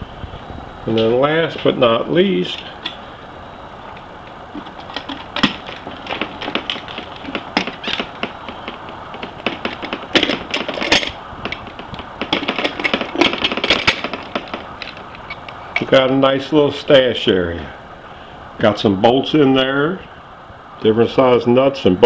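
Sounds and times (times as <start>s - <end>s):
metal latches clicking and rattling: 3.9s - 16.2s.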